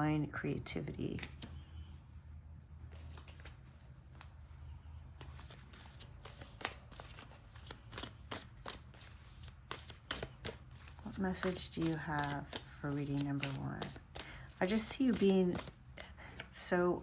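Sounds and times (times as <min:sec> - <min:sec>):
cards being shuffled: 0:02.9 - 0:04.5, 0:05.2 - 0:16.6.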